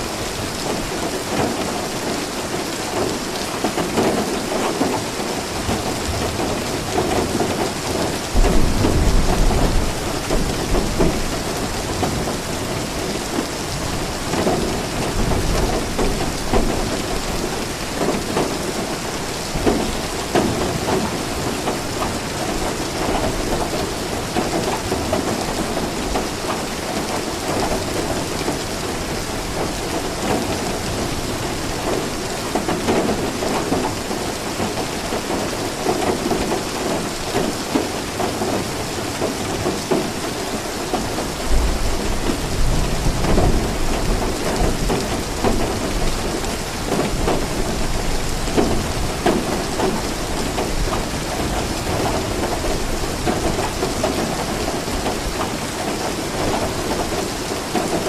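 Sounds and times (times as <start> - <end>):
steady rain falling: 0.0 - 58.0
low rumble of thunder: 5.7 - 25.7.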